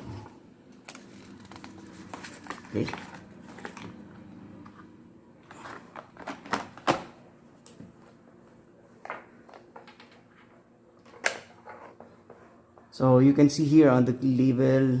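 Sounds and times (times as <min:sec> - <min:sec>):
items being handled and set down: 0:00.1 - 0:08.2.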